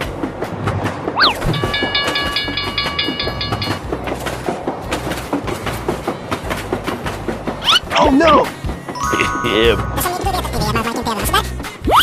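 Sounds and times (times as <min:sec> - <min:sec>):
train wheels clattering over joints: 0:00.0 - 0:07.6.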